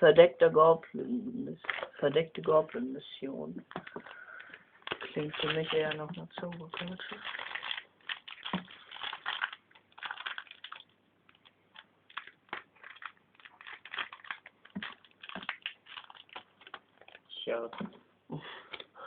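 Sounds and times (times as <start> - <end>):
foil wrapper crinkling: 1.6 - 2.5, 3.8 - 17.4.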